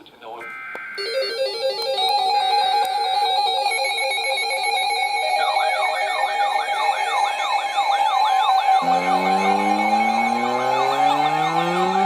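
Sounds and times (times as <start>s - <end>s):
electronic siren steady tones: 0.5s - 12.0s
fast yelp siren: 4.6s - 12.0s.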